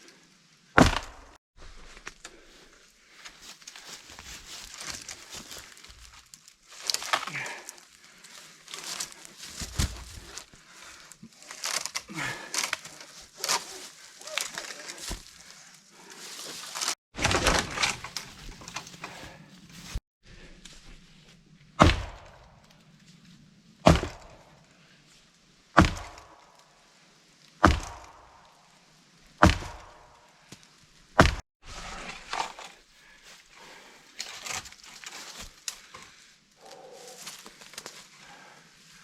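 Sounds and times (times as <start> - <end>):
rustling and crackling: 3.1 - 20.0.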